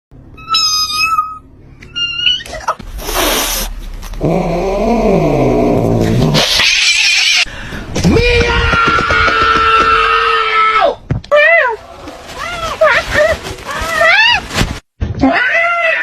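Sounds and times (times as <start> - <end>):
cat hissing: 2.8 - 4.4.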